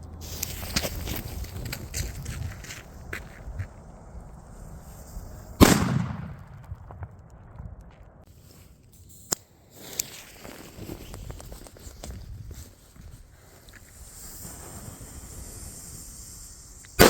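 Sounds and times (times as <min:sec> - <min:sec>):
firecracker bang: 0:05.6 - 0:07.2.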